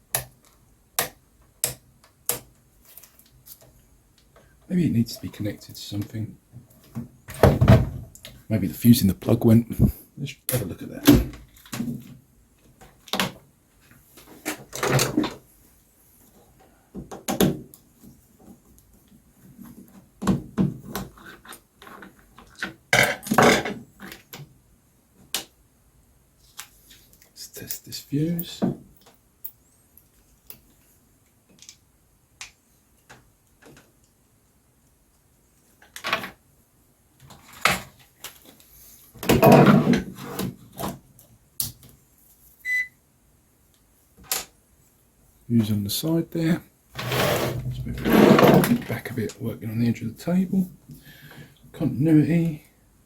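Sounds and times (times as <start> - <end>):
knocks and clatter on workbench: 6.9 - 8.1
short high beep: 42.7 - 42.9
scraping rustle: 47.0 - 49.1.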